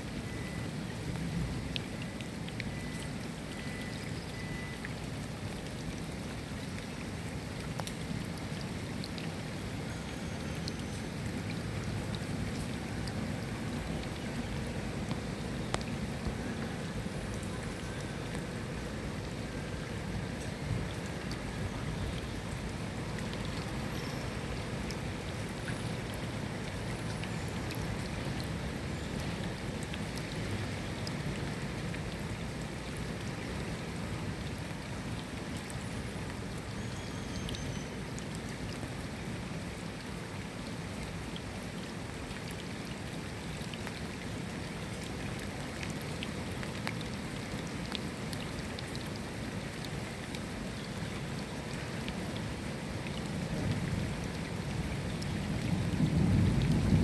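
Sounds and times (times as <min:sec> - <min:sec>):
steady rain: 0:00.0 - 0:57.0
low rumble of thunder: 0:53.4 - 0:57.0.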